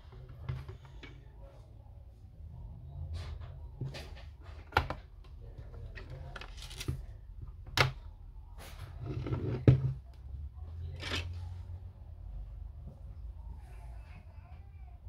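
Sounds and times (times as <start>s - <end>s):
parts clicking and scraping: 10.8s - 11.6s.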